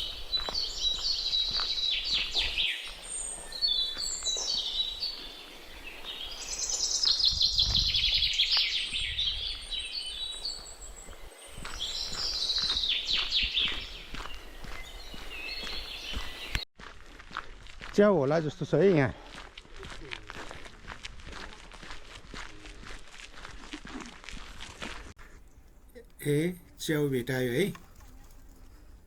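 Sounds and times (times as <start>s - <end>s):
songbird singing: 0.0s - 16.6s, 25.2s - 29.0s.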